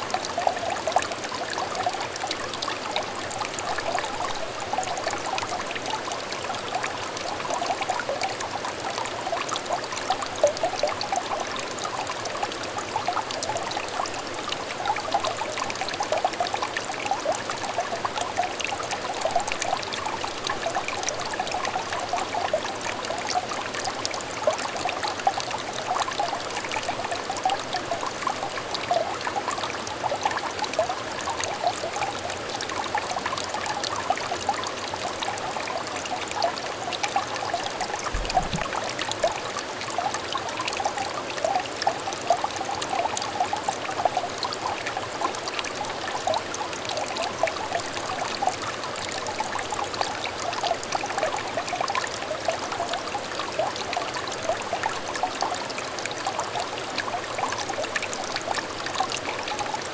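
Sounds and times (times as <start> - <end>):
stream trickling and burbling: 0.0 - 59.9
small water splashes: 37.7 - 39.5.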